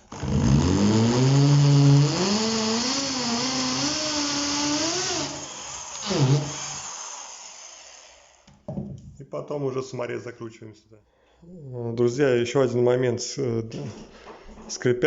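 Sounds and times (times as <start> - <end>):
electric drill boring into wood: 0.0 - 8.5.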